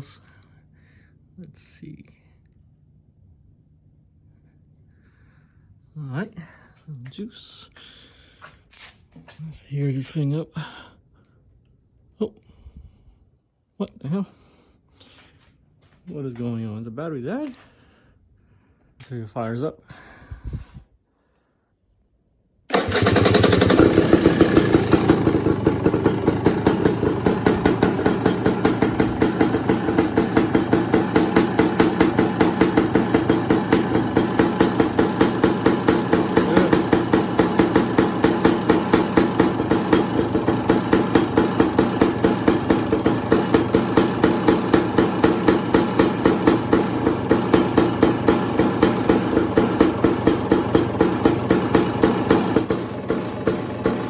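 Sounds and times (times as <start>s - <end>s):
two-stroke engine starting and idling: 22.7s - 54.0s.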